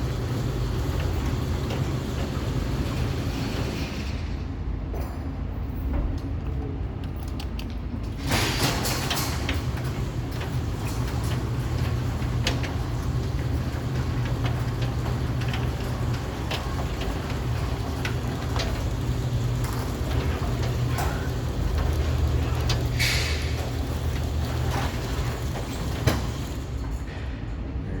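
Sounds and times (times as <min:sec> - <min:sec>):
garage door motor hum: 0:00.0 - 0:27.6
chain and door rattling: 0:07.0 - 0:27.1.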